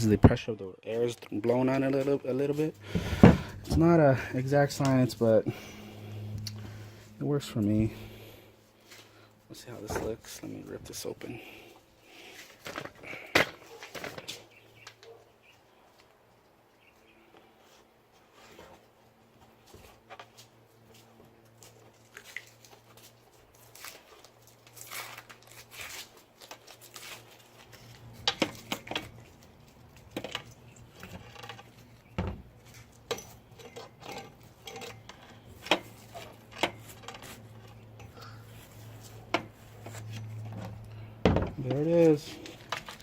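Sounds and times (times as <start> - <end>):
wrapping crinkling and tearing: 22.0 - 30.0, 42.2 - 43.0.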